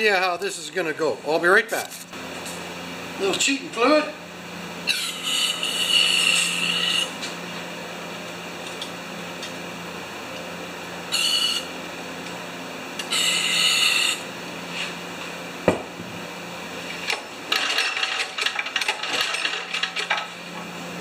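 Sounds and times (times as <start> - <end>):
small parts clattering: 17.5 - 20.3.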